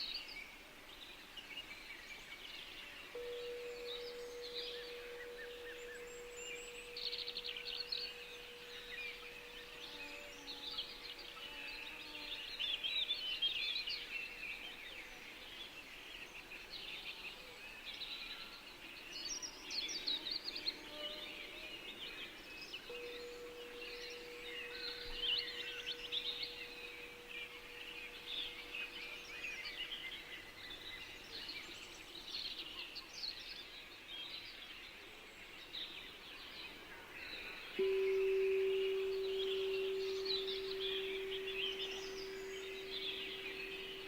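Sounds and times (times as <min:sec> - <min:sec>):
forest ambience hiss: 0:00.0 - 0:44.0
songbirds chirping and trilling: 0:00.0 - 0:44.0
steady pure tone: 0:03.1 - 0:11.4, 0:22.8 - 0:30.2, 0:37.8 - 0:44.0.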